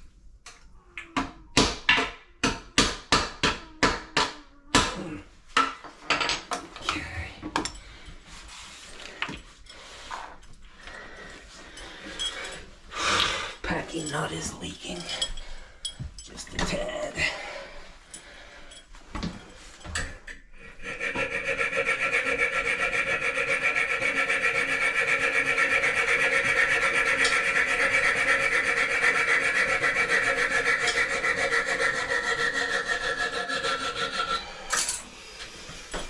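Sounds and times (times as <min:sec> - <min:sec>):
power tool grinding metal: 0:20.8 - 0:34.7.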